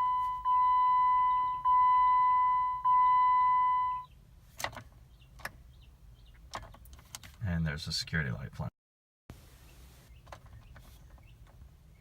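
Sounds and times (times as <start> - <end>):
car warning chime beeping: 0.0 - 4.1.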